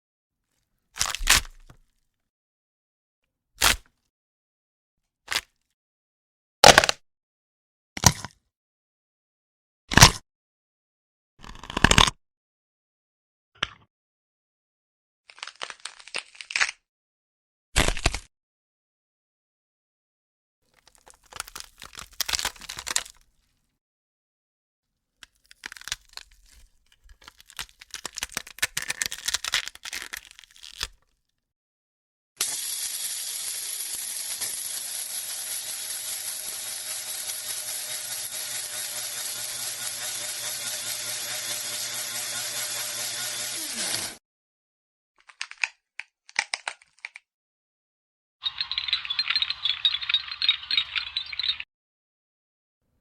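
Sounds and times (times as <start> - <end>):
bone cracking and crunching: 1.0 - 1.8, 11.4 - 12.1, 15.3 - 16.8, 17.8 - 18.3, 20.7 - 23.3, 25.2 - 31.2, 45.2 - 47.2.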